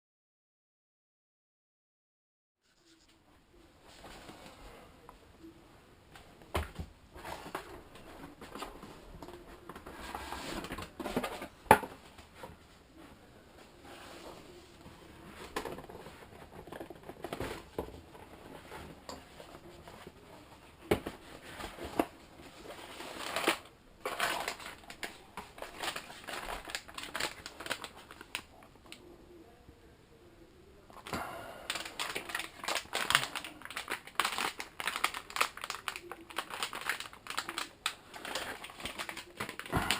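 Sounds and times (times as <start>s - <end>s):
packaging crinkling and rustling: 20.9s - 29.0s, 31.0s - 39.9s.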